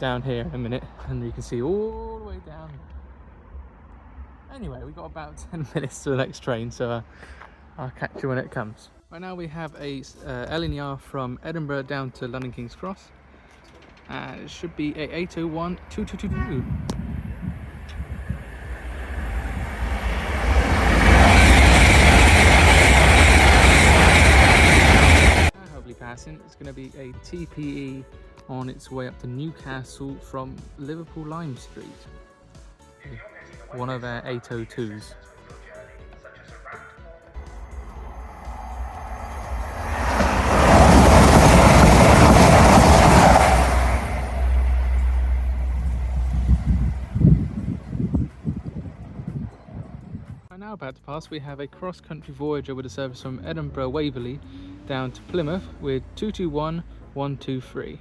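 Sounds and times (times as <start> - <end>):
train passing at high speed: 14.9 - 25.6, 37.4 - 50.2
low rumble: 15.7 - 25.5, 37.4 - 50.4.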